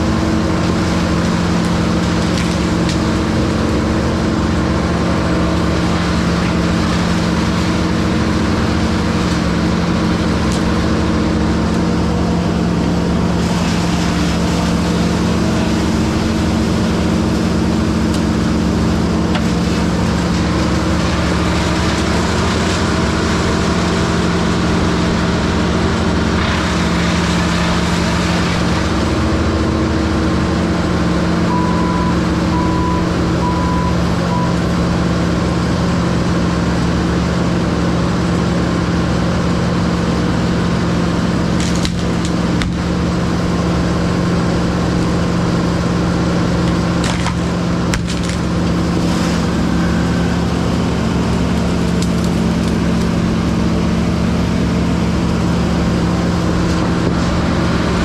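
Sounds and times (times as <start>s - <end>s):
diesel engine under load: 0.0s - 58.0s
wood cracking: 0.1s - 29.7s, 41.1s - 43.6s, 44.4s - 56.0s
short beeps: 31.5s - 34.6s.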